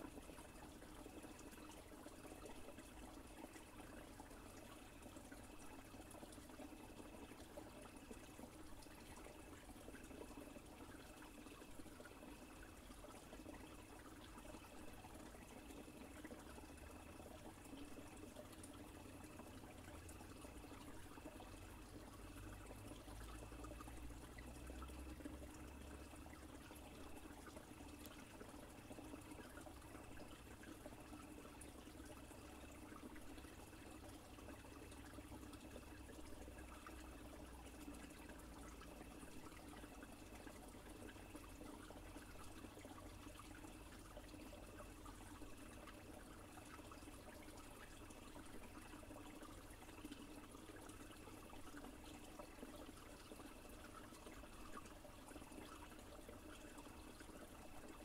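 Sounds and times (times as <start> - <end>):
stream trickling over stones: 0.0 - 58.0.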